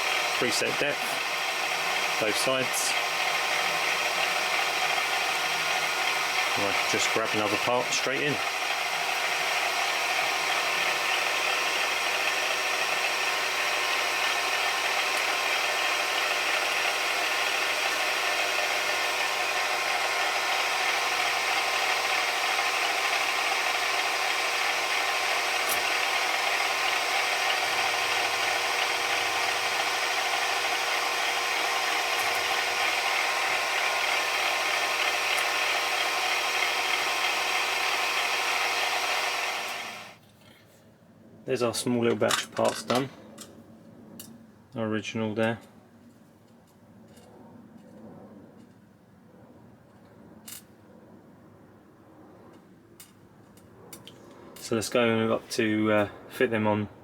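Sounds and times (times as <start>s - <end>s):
small machine tool running: 0.0s - 40.2s.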